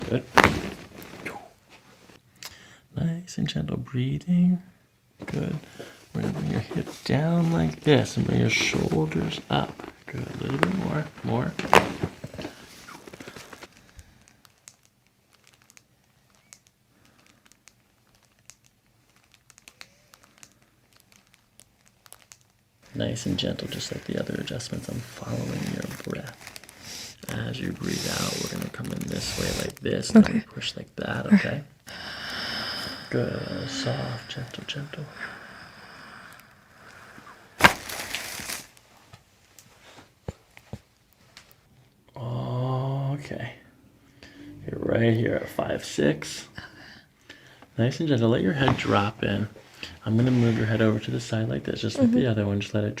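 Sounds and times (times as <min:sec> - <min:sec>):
spinal joint cracking: 0:00.0 - 0:01.6, 0:07.7 - 0:22.6
faint crinkles and clicks: 0:11.5 - 0:29.9, 0:37.6 - 0:42.0.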